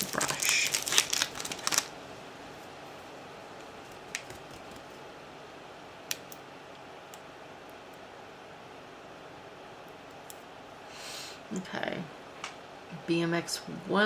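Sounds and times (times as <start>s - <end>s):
plastic packaging crinkling: 0.0s - 2.0s.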